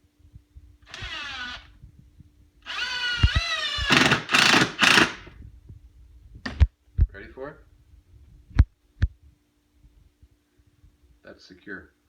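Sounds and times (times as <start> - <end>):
screw gun driving screw into wood: 0.9 - 1.6, 2.7 - 5.3.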